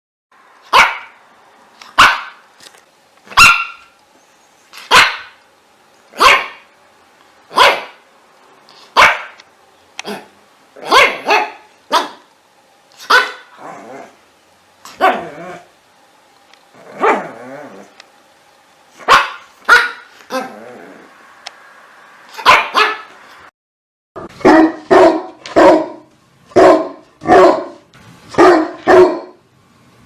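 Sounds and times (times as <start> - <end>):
dog barking: 0.7 - 1.2, 2.0 - 2.4, 3.3 - 3.9, 4.8 - 5.4, 6.2 - 6.7, 7.5 - 8.0, 9.0 - 9.4, 10.0 - 12.3, 13.0 - 13.6, 15.0 - 15.4, 17.0 - 17.4, 19.0 - 20.5, 22.4 - 23.1, 24.2 - 29.4.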